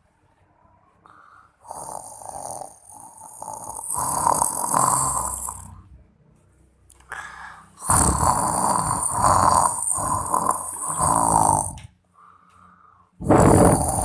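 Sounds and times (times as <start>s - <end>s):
woman snoring: 1.1s - 5.8s, 7.1s - 11.9s, 13.2s - 14.0s.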